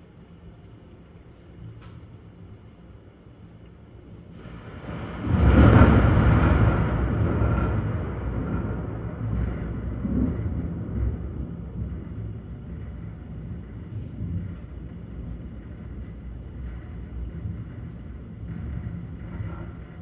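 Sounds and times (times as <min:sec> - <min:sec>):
thunder crack and rumble: 0:04.3 - 0:20.0.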